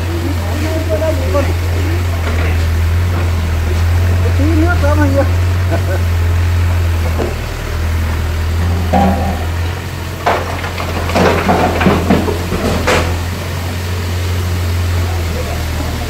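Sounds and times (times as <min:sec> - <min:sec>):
diesel engine running: 0:00.0 - 0:16.0
sharp knocks and clatter: 0:08.6 - 0:13.3.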